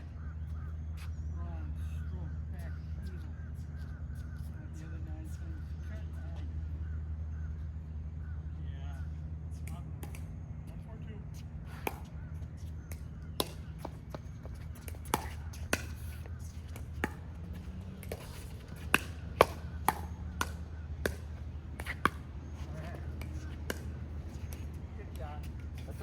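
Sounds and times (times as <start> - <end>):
steady low hum: 0.0 - 26.0
pickleball paddles hitting ball: 11.8 - 12.1, 12.9 - 26.0.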